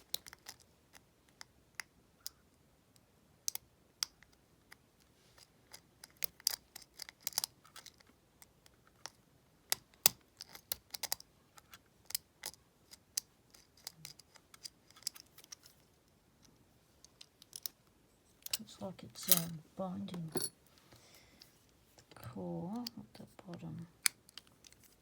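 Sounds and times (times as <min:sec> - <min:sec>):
lock picking metallic clicks: 0:05.4 - 0:08.0.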